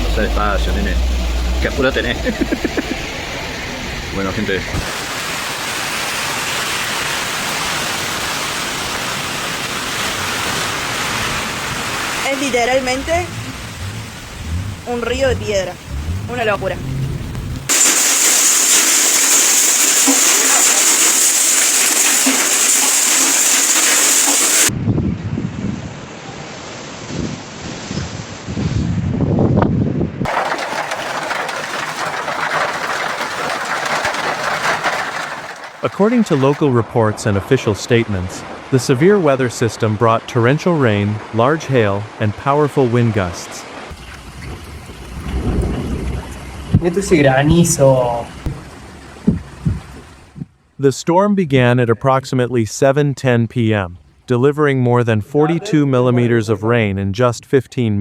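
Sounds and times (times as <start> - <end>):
torrential rain and hail: 4.8 - 16.6, 17.7 - 24.7, 30.3 - 36.6
storm wind buffeting microphone: 44.0 - 50.5.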